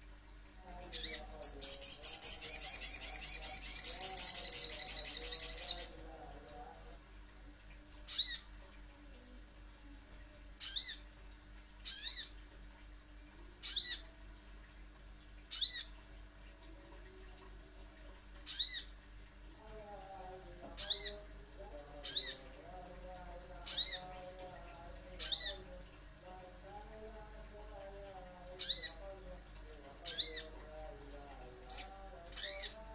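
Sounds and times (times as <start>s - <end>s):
bird chittering calls: 0.9s - 5.9s, 10.6s - 11.0s, 11.8s - 12.4s, 13.6s - 14.0s, 15.5s - 15.9s, 18.5s - 18.9s, 22.0s - 22.4s, 25.2s - 25.6s, 28.6s - 29.0s, 30.1s - 30.6s, 31.7s - 32.8s.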